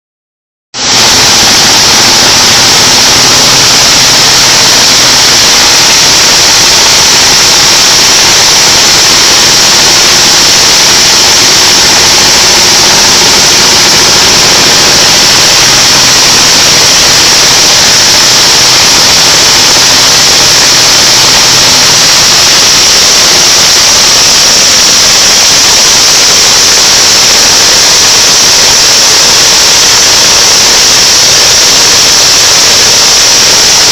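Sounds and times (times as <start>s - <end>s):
blower rushing hiss: 0.8s - 33.9s.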